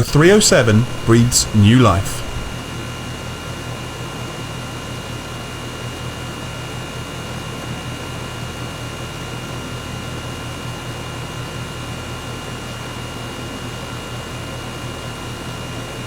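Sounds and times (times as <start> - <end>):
faint steady tones: 0.0 - 2.6.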